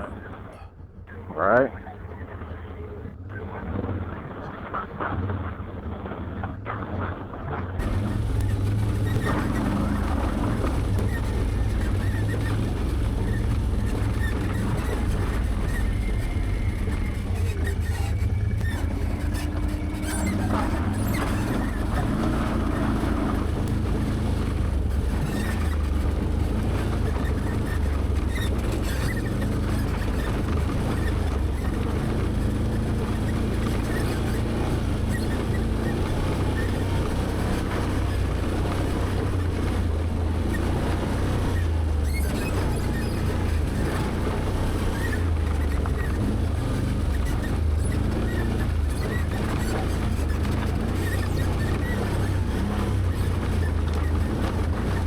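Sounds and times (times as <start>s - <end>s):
atv engine running: 0.0s - 3.9s, 6.7s - 55.0s.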